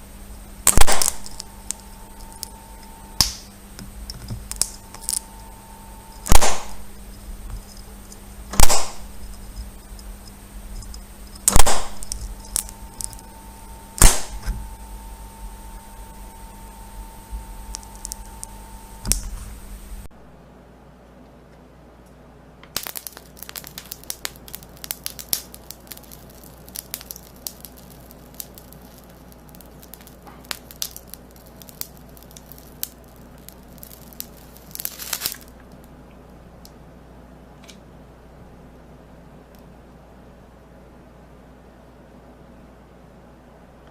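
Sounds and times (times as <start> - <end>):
crackling and crinkling: 0.0 - 20.1, 22.6 - 36.8
steady hum: 0.0 - 43.9
sharp click: 7.7 - 13.2.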